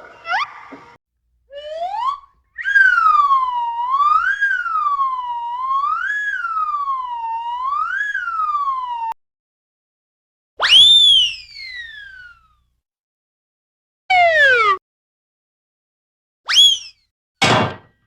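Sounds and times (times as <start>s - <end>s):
cartoon whistle glide: 0.1s - 0.6s, 1.5s - 9.2s, 10.6s - 12.5s, 16.5s - 17.0s
siren-like swooping whistle: 1.5s - 9.2s, 10.6s - 12.4s.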